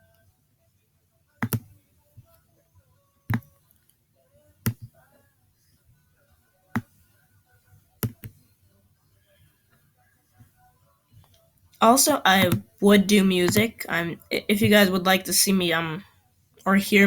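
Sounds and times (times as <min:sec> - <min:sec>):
faint radio music: 0:00.0 - 0:17.0
computer mouse clicks: 0:01.4 - 0:01.7, 0:08.0 - 0:08.4.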